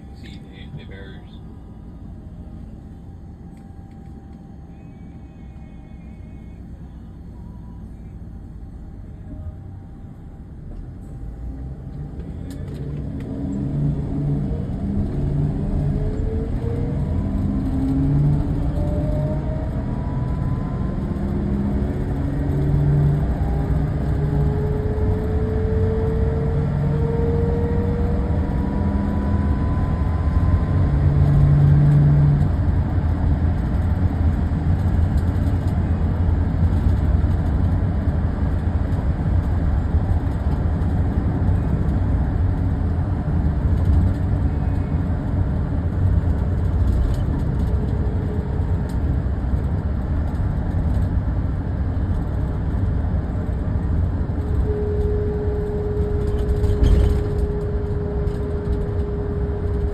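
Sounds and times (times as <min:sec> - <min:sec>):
faint whining tones: 0:00.0 - 0:26.2, 0:54.0 - 0:59.9
car road and engine rumble: 0:00.0 - 0:59.9.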